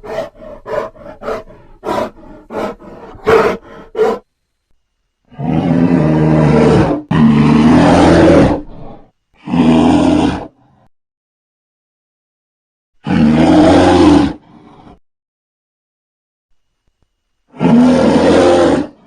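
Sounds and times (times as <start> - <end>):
bear roars: 0.0 - 4.2, 5.3 - 10.9, 13.0 - 15.0, 17.5 - 19.0.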